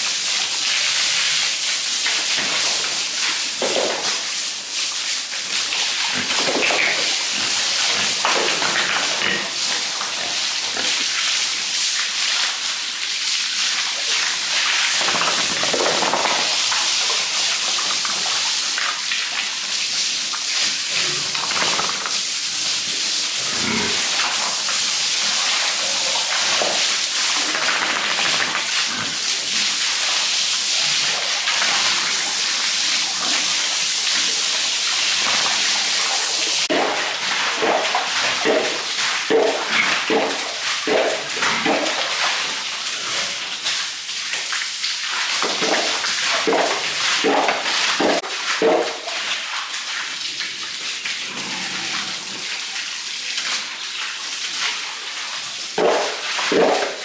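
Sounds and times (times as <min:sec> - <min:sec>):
water spraying: 0:00.0 - 0:37.0.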